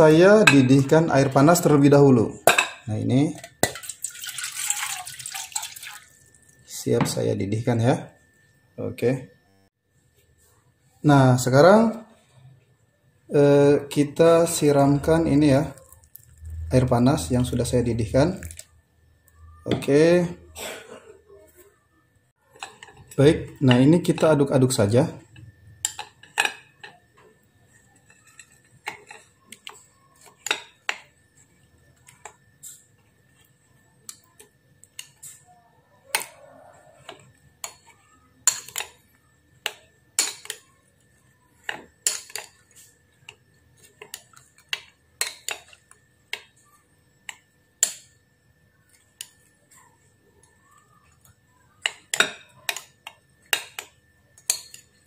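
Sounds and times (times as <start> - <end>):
spoon clinking against glass: 0.4 - 1.4, 27.8 - 31.2, 34.1 - 40.8, 41.5 - 48.2, 50.6 - 55.0.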